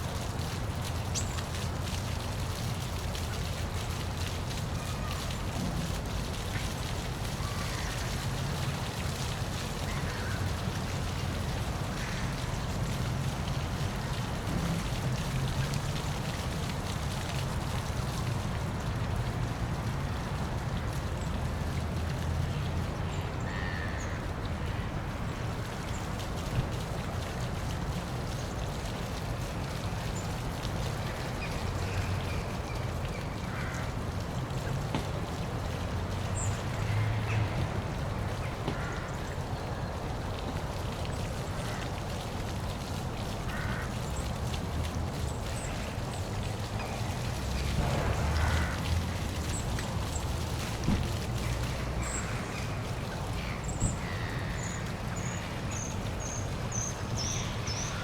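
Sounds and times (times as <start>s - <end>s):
waterfall rushing: 45.9s - 52.8s.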